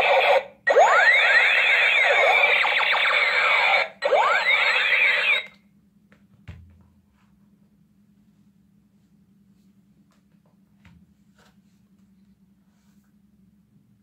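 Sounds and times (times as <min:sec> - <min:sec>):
toy gun zapping tones: 0:00.0 - 0:05.5.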